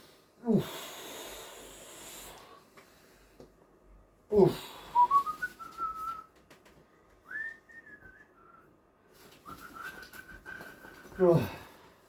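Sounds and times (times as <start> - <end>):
person whistling: 4.9 - 6.3, 7.2 - 8.7, 9.4 - 11.6.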